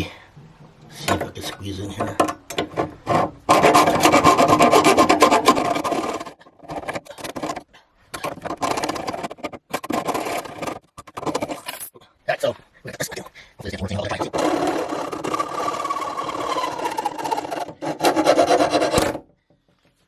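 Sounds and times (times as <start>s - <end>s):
hacksaw sawing through metal: 2.0s - 7.6s, 8.2s - 11.6s, 14.1s - 19.2s.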